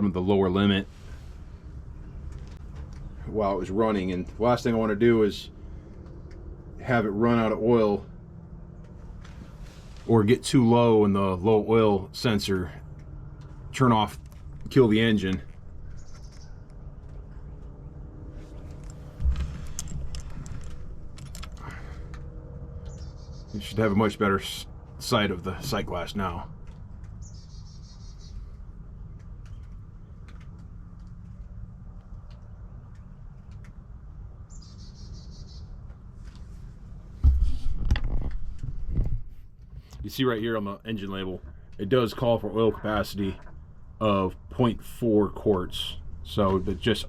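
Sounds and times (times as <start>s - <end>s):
low steady rumble: 0.0s - 47.0s
rustling: 8.8s - 10.2s, 12.9s - 23.0s
light clicks and metallic clinks: 18.5s - 22.2s
handling bump: 18.6s - 22.3s
loud low thumps: 19.1s - 22.1s
high bird trill: 22.8s - 24.0s, 27.2s - 28.5s, 34.5s - 35.8s.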